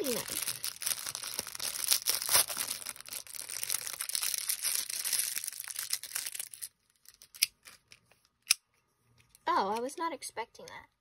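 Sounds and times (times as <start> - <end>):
plastic packaging crinkling: 0.0 - 8.0.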